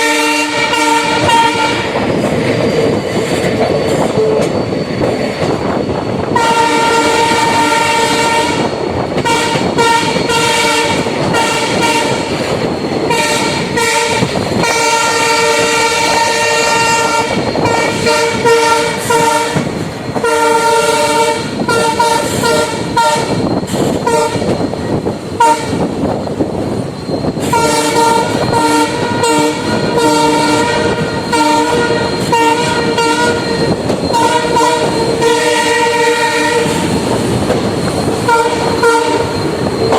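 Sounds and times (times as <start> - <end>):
locomotive horn honking: 0.0 - 2.0, 6.3 - 12.3, 13.0 - 23.4, 24.0 - 24.6, 25.4 - 25.8, 27.4 - 37.1, 38.1 - 39.4
moving train running noise: 0.0 - 39.9.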